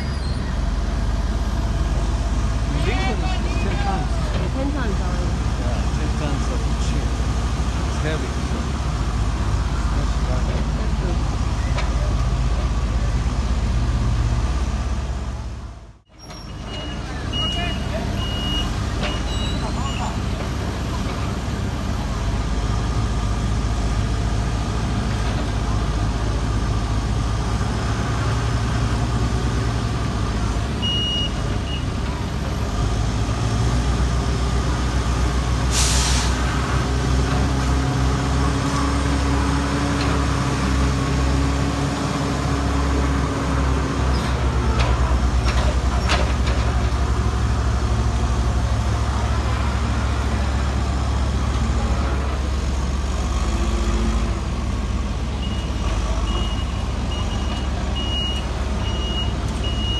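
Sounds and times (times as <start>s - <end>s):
heavy diesel machinery rumbling: 0.0s - 59.9s
air brake hiss: 35.7s - 36.4s.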